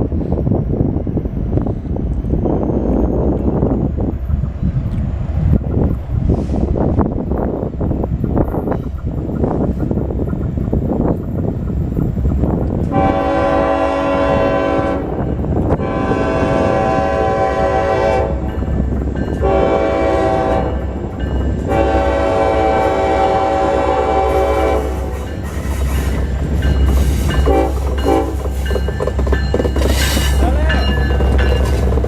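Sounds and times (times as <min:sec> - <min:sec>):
low rumble of passing train: 0:00.0 - 0:32.0
locomotive air horn blasts: 0:12.9 - 0:18.5, 0:19.4 - 0:21.0, 0:21.7 - 0:25.8, 0:27.4 - 0:28.4.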